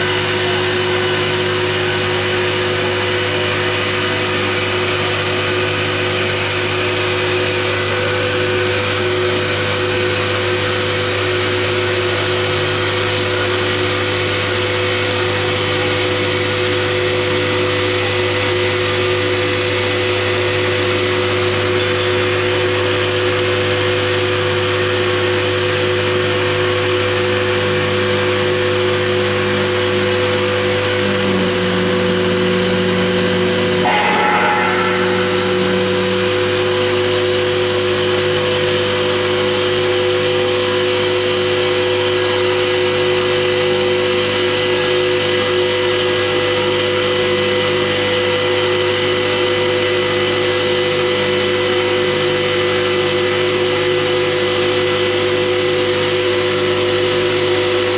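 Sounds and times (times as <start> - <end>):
machine motor hum: 28.6 - 37.2.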